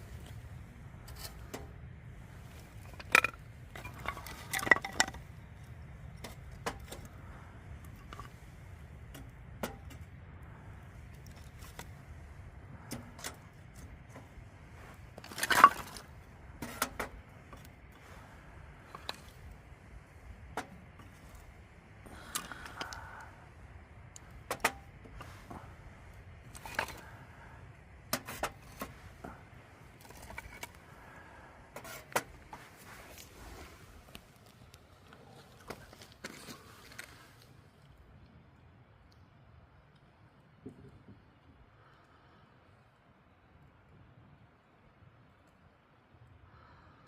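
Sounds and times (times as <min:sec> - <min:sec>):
campfire crackling and popping: 0:00.0 - 0:28.1
low steady rumble: 0:00.0 - 0:47.0.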